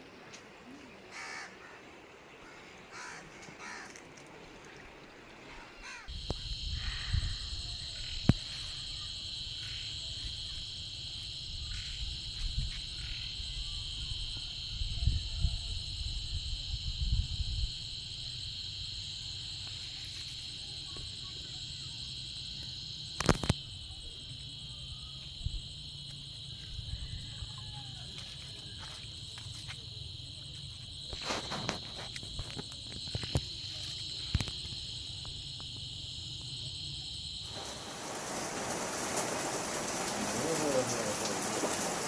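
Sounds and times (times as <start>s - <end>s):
crickets chirping: 0.0s - 42.0s
faint crow caws: 1.1s - 4.1s, 5.5s - 6.1s.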